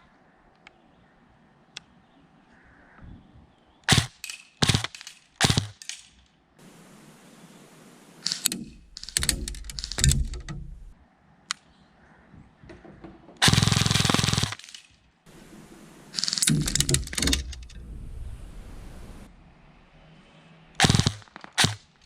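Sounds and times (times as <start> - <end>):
airsoft gun firing: 3.9 - 6.0, 13.4 - 17.2, 20.8 - 22.0.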